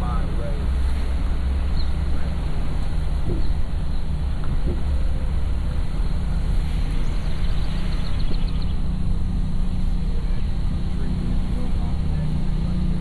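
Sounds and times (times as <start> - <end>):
car engine and tyre rumble: 0.0 - 13.0.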